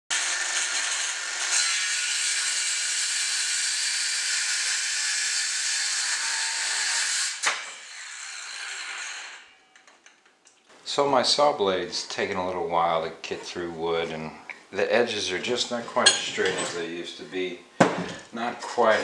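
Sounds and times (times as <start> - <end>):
circular saw cutting wood: 0.1 - 9.6.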